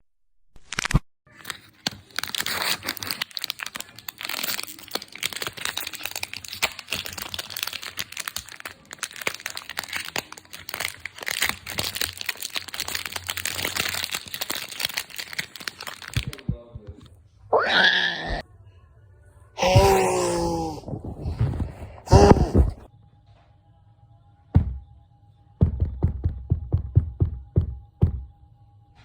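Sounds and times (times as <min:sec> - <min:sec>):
crumpling crinkling crackles: 0:00.6 - 0:16.5, 0:19.6 - 0:22.8.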